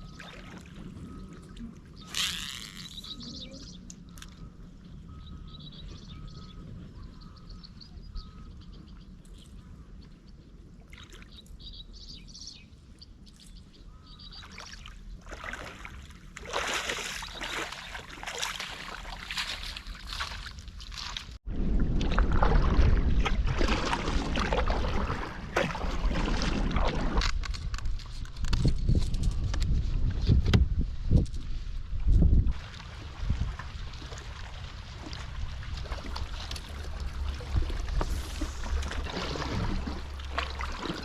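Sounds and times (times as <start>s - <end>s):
bird chirps: 1.1s - 9.7s
water swishing against kayak hull: 15.2s - 28.2s, 32.2s - 41.0s.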